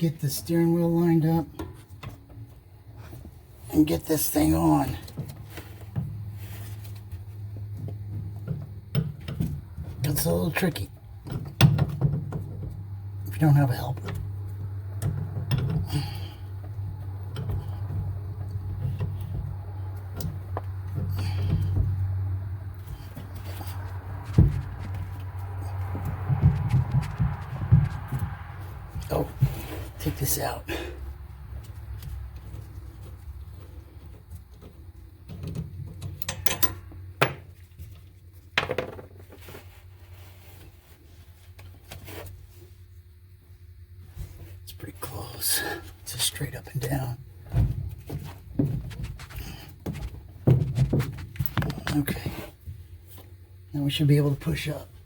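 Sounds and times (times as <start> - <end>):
rubbing and light clatter: 22.8 - 30.2, 37.5 - 43.0, 47.4 - 53.4
clicks and knocks of parts: 31.6 - 39.3.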